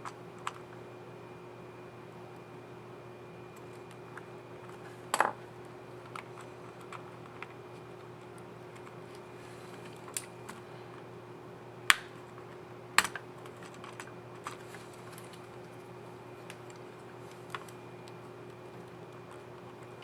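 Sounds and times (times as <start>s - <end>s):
faint steady hum: 0.0s - 20.0s
sharp plastic snaps: 11.9s - 12.2s, 13.0s - 14.6s.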